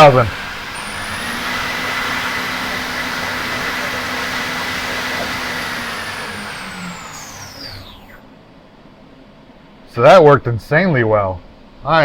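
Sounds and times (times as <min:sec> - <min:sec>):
spindle high whine: 0:00.0 - 0:08.4
fan air rushing: 0:00.0 - 0:08.9.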